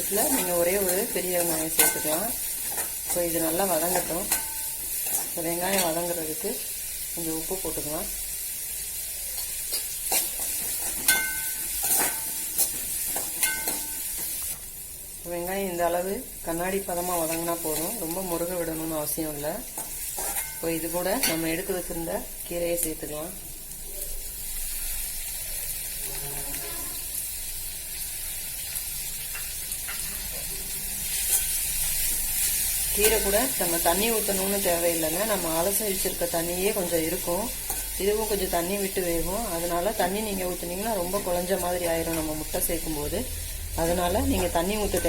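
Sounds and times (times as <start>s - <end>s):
spatula scraping a pan: 0.0s - 6.0s, 9.4s - 14.4s, 19.8s - 21.4s
shallots sizzling in hot oil: 0.0s - 45.0s.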